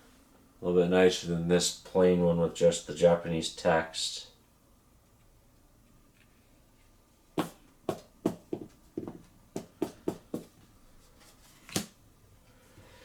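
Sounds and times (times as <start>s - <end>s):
cards tapping on tabletop: 7.4s - 10.5s.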